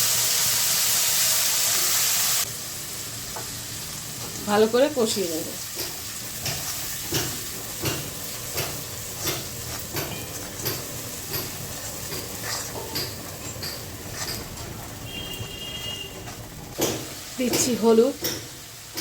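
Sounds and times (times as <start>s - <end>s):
paste sizzling in hot oil: 0.0s - 19.0s
spatula scraping the pan: 9.0s - 15.5s.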